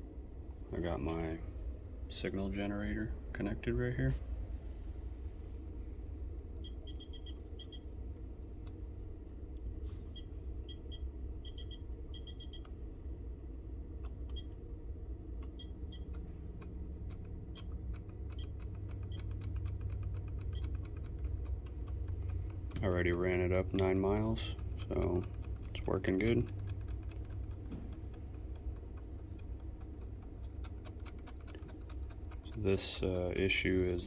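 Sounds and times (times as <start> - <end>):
low electrical hum: 0.0 - 34.0
light clicks and ticks: 15.4 - 34.0.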